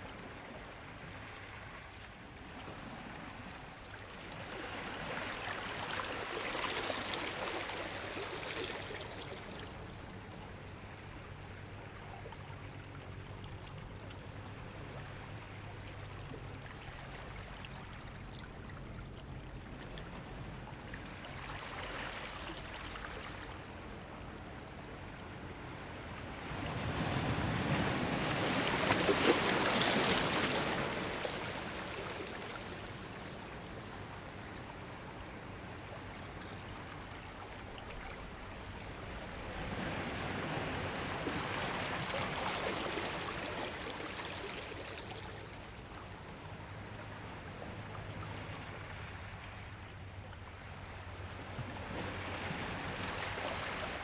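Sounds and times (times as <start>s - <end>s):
soft wash of water: 0.0s - 54.0s
ocean waves breaking: 25.6s - 34.2s.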